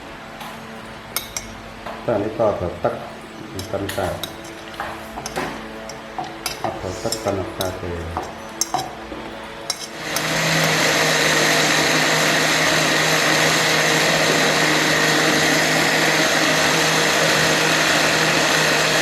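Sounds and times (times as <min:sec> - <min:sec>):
blender motor running: 0:09.8 - 0:19.0.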